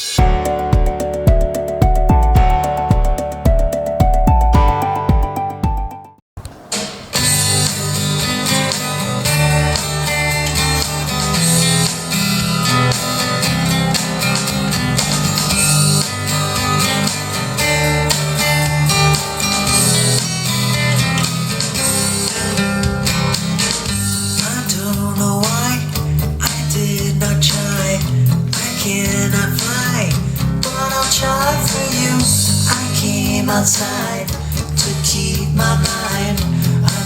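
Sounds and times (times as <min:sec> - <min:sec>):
guitar-led song: 0:00.0 - 0:06.0, 0:06.8 - 0:37.0.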